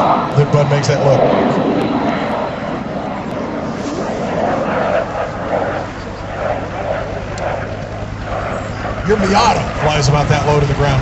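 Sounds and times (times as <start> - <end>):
jet aircraft low pass: 0.0 - 11.0.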